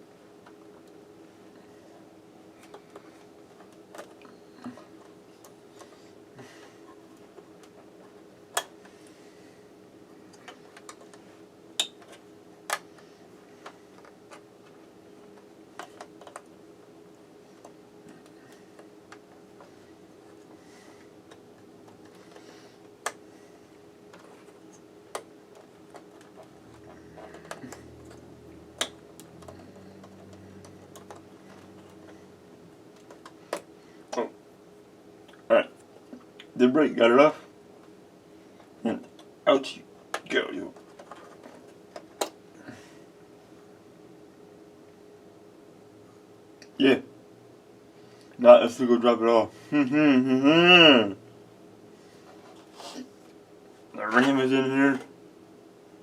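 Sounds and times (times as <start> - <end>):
low hum: 12.9 - 35.0.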